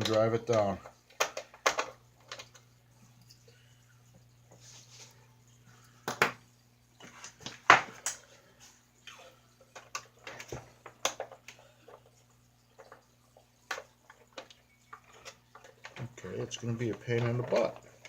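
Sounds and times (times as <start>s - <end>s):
plastic toy parts clicking: 0.0s - 2.6s, 9.8s - 11.5s.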